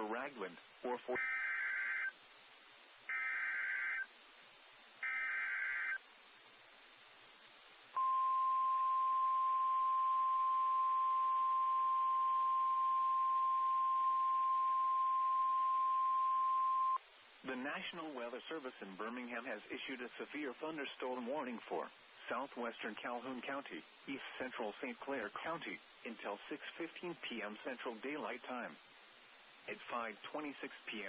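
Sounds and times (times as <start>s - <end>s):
steady warning alarm tone: 5.0s - 6.0s, 8.0s - 17.0s.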